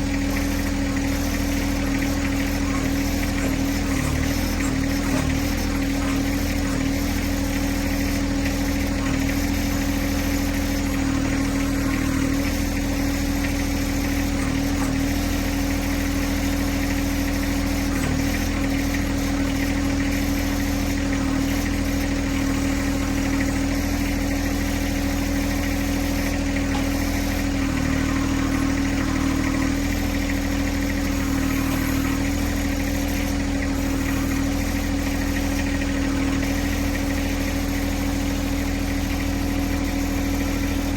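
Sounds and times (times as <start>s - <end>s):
tractor diesel engine idling: 0.0s - 40.9s.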